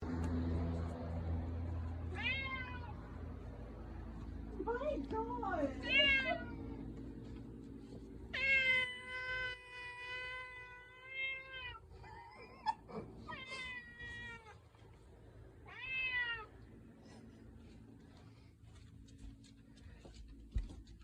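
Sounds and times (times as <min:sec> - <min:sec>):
cat meowing: 0:02.1 - 0:03.0, 0:08.3 - 0:11.9, 0:13.3 - 0:14.6, 0:15.6 - 0:16.6.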